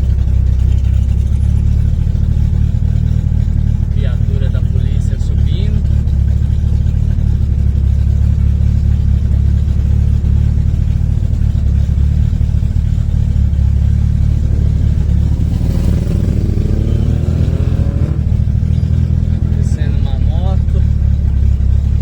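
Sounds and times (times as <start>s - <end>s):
turbocharged car engine droning: 0.0s - 22.0s.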